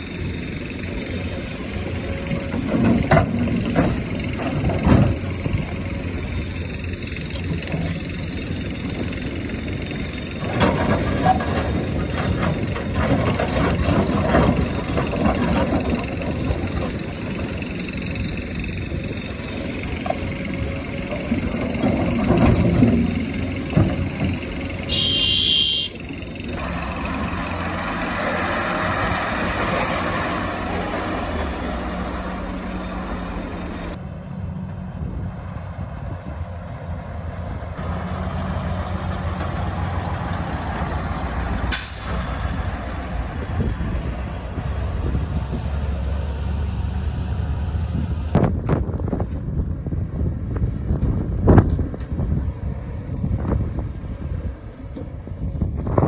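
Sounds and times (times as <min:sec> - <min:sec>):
diesel engine running: 0:00.0 - 0:56.0
high squeal: 0:24.6 - 0:27.6.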